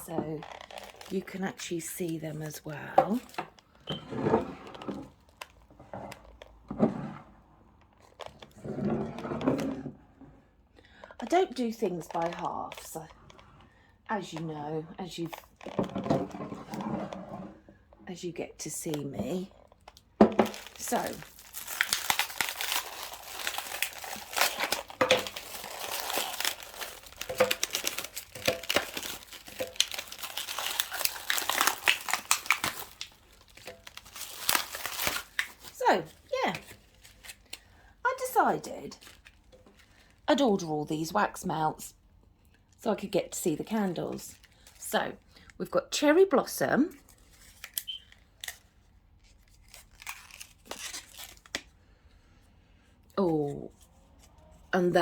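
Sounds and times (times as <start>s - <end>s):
packaging rustling: 0.4s - 1.3s, 19.7s - 37.6s.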